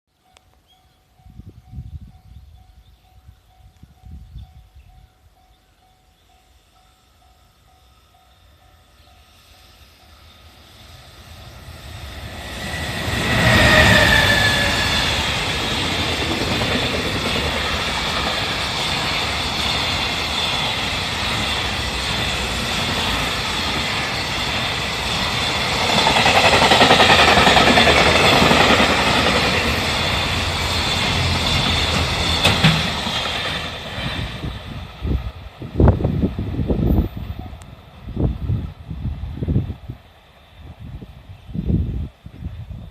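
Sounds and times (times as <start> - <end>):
freight train passing: 0.1 - 42.9
locomotive falling whine: 10.3 - 35.2.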